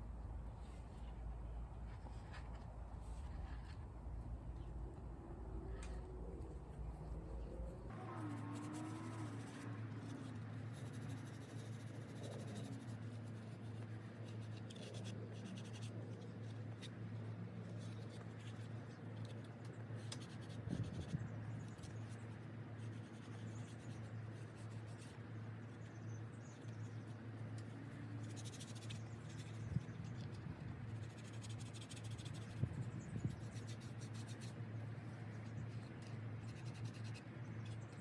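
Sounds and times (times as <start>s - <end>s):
low steady hum: 0.0s - 38.0s
sandpaper scratching plastic: 8.2s - 17.0s, 28.2s - 34.6s.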